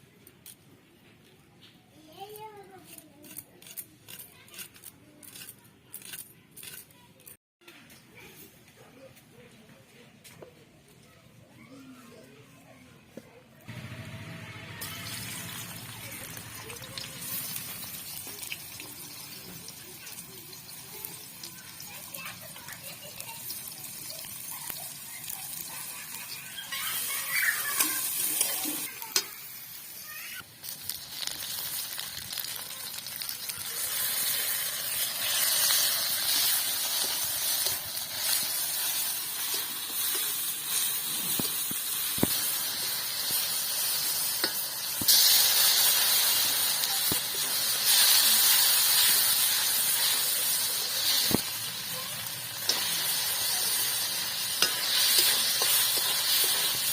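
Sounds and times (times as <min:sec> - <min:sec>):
stirring in a pan: 0:14.8 - 0:29.5, 0:30.6 - 0:56.9
food sizzling in hot oil: 0:14.8 - 0:56.9.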